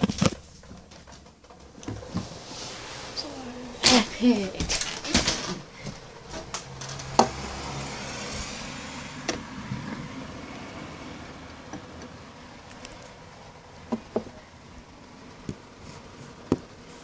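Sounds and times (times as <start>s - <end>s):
steady hiss: 2.1s - 4.5s.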